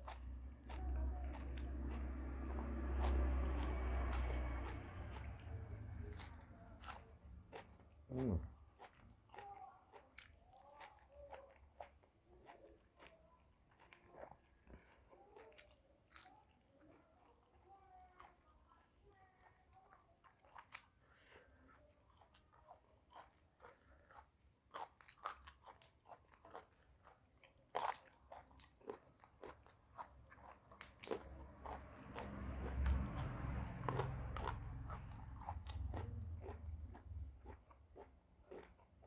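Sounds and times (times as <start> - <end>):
crunching raw vegetables: 0.0 - 13.2, 22.9 - 39.0.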